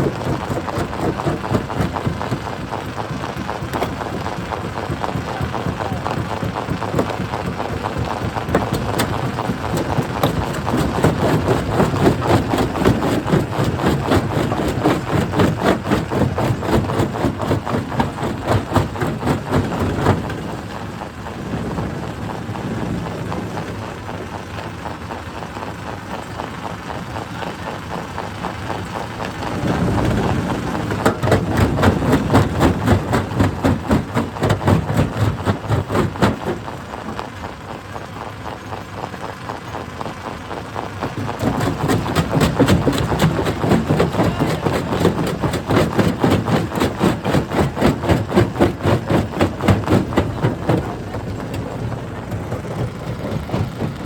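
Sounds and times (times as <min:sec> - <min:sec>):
hydraulic rock breaker hammering: 0:00.0 - 0:21.0, 0:29.1 - 0:37.2, 0:41.0 - 0:54.0
excavator engine running: 0:00.0 - 0:54.0.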